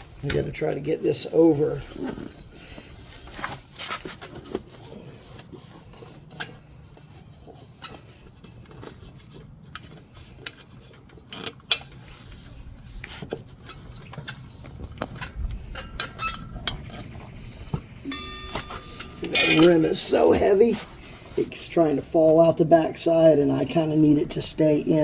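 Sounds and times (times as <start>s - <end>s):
metallic clinks and scraping: 18.0s - 21.5s.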